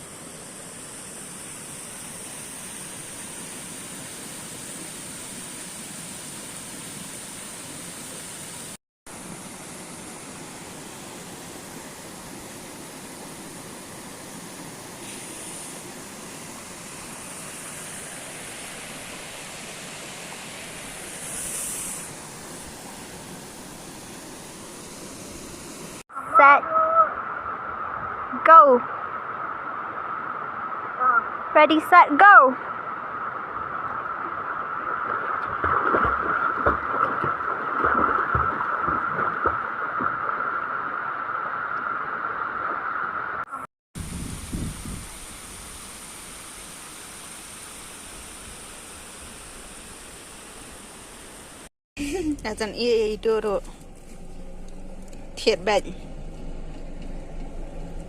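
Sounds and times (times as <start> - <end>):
river water rushing: 0.1 - 43.5
swimmers splashing: 34.7 - 41.0.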